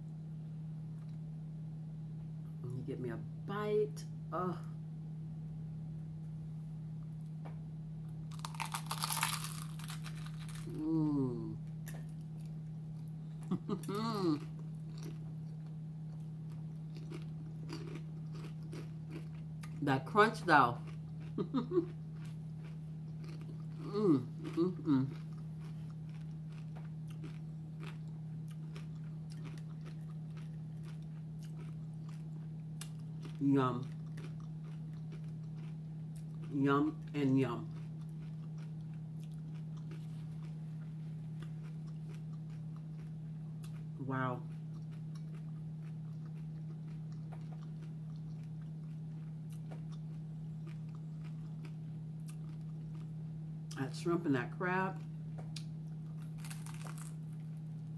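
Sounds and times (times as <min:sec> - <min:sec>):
low hum: 0:00.0 - 0:57.9
crunchy chewing: 0:08.2 - 0:10.8, 0:11.8 - 0:19.8, 0:20.7 - 0:53.2, 0:55.0 - 0:57.9.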